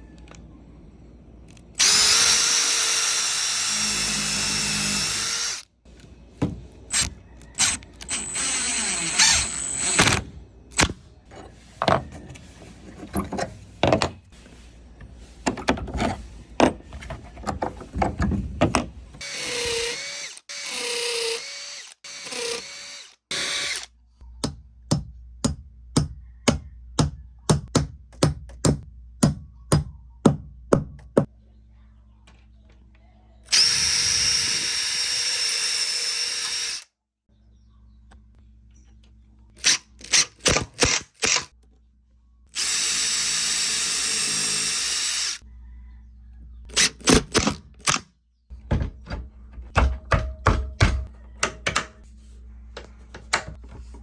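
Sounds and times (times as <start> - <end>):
power drill driving screws: 1.8 - 5.6, 6.9 - 10.2, 19.2 - 23.9, 33.5 - 36.9, 39.6 - 41.5, 42.6 - 45.4.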